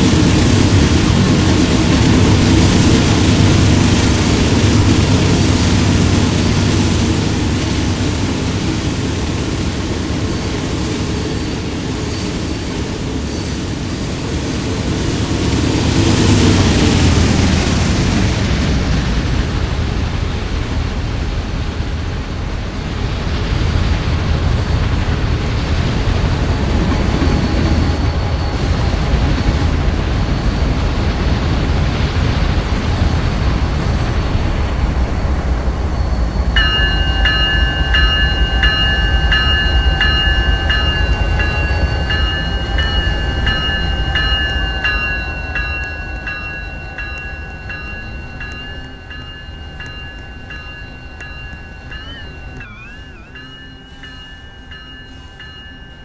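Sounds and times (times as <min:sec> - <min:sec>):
train wheels rumbling on rail: 0:00.0 - 0:56.0
high ringing tones with clicks: 0:36.5 - 0:56.0.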